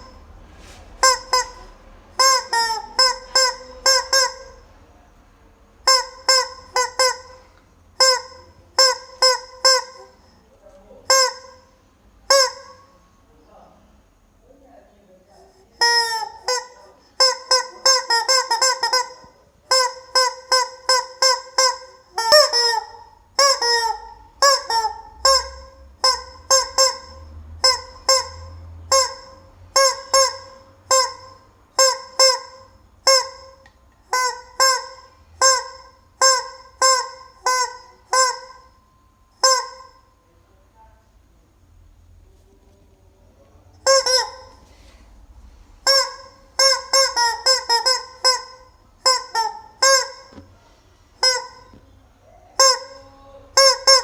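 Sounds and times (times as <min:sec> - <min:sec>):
rubber chicken toy squawking: 0:01.0 - 0:04.6, 0:05.8 - 0:10.4, 0:11.1 - 0:11.7, 0:12.3 - 0:12.9, 0:15.8 - 0:38.8, 0:39.4 - 0:40.0, 0:43.8 - 0:44.7, 0:45.8 - 0:50.5, 0:51.2 - 0:54.0.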